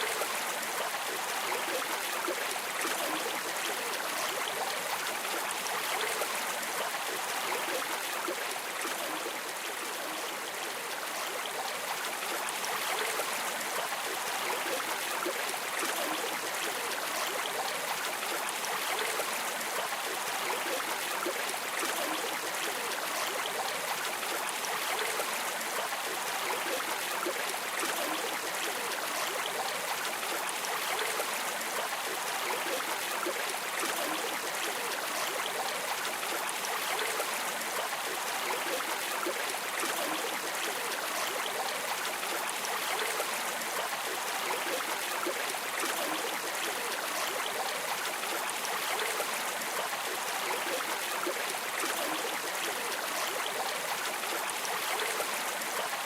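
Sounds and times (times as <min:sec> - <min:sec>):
stream of water gurgling: 0:00.0 - 0:56.0.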